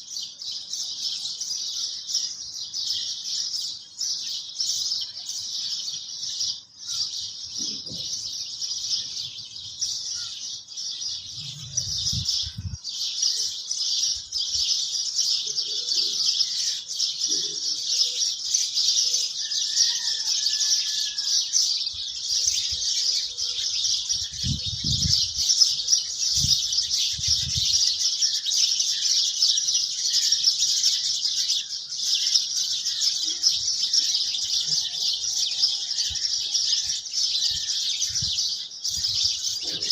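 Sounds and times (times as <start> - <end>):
dense chorus of high chirping: 0.0 - 39.9.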